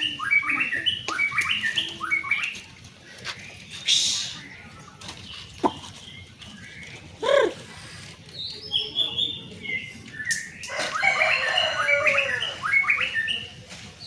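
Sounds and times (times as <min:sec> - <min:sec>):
bird singing: 0:00.0 - 0:02.6, 0:08.3 - 0:13.6.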